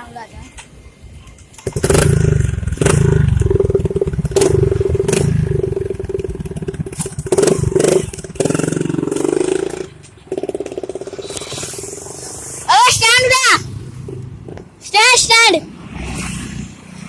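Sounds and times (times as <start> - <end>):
motorcycle engine revving: 1.6 - 12.7, 15.7 - 17.0.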